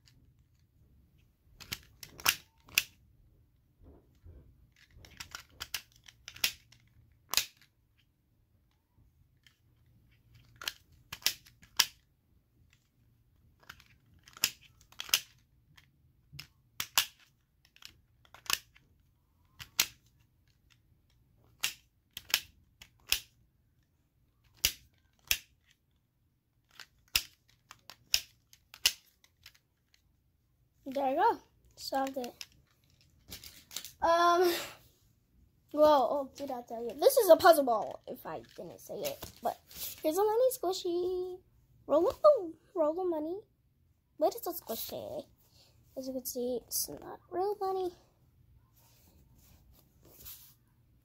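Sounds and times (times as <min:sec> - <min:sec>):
plastic puzzle ball clicking: 0:01.5 - 0:03.0, 0:04.7 - 0:08.1, 0:08.7 - 0:26.0, 0:26.6 - 0:30.0.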